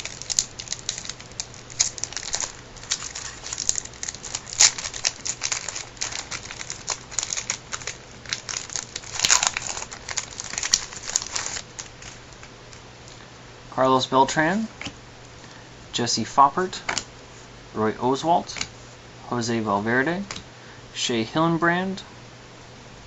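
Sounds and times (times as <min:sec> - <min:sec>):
wrapper crinkling and tearing: 0:00.0 - 0:12.8.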